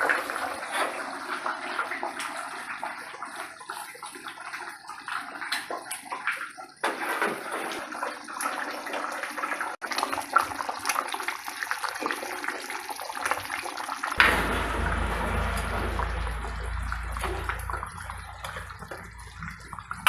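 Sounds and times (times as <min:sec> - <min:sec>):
splashing running water: 0:10.0 - 0:20.0
low rumble: 0:14.2 - 0:19.8.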